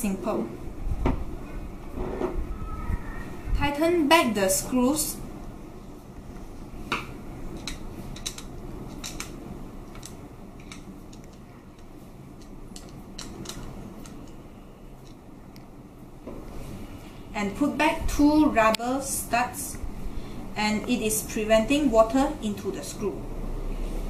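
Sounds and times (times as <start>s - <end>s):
low steady background noise: 0.0s - 24.0s.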